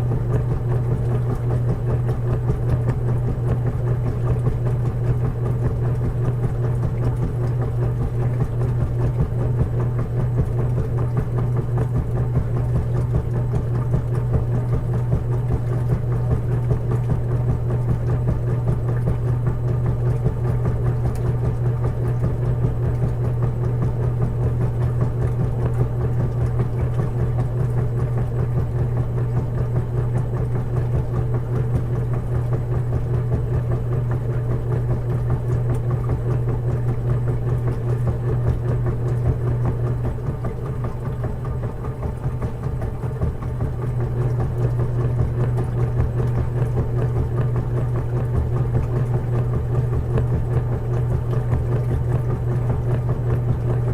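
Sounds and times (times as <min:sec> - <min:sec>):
washing machine humming: 0:00.0 - 0:53.9.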